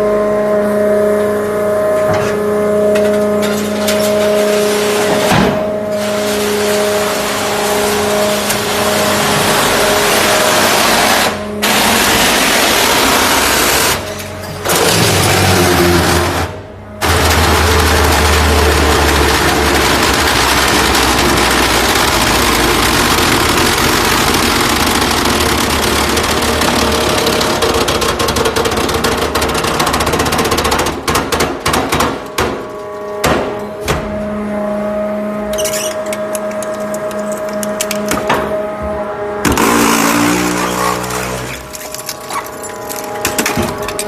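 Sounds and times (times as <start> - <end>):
hydraulic pumps humming: 0.0 - 44.0
metal crushing and grinding: 1.9 - 34.5, 35.2 - 44.0
metal cracks and clanks: 2.0 - 8.8, 17.0 - 33.7, 35.5 - 38.6, 39.4 - 44.0.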